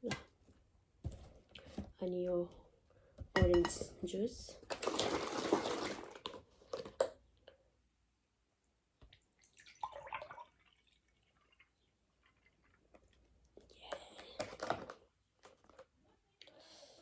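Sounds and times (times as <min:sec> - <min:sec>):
tableware clicks and knocks: 0:03.4 - 0:03.9.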